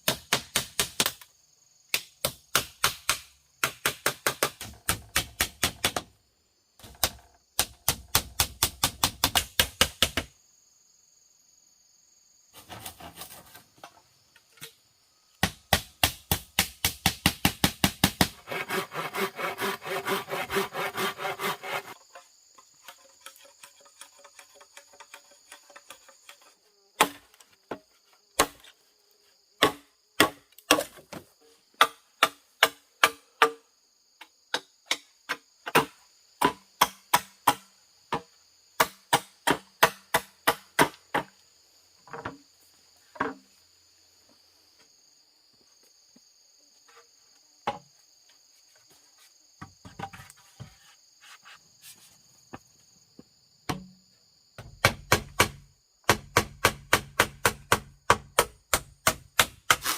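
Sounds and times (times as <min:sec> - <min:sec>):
axe chopping wood: 0:00.0 - 0:01.2, 0:01.9 - 0:06.1, 0:15.4 - 0:18.4, 0:27.0 - 0:27.3, 0:28.4 - 0:28.7, 0:29.6 - 0:31.2, 0:31.8 - 0:33.6, 0:34.5 - 0:38.2, 0:38.8 - 0:41.4, 0:53.7 - 0:54.0, 0:54.6 - 0:59.9.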